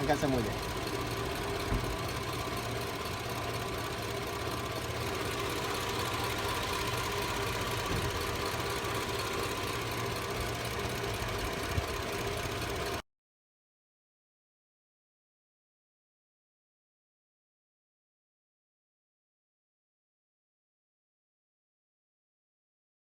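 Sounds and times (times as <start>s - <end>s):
car engine idling: 0.0s - 13.0s.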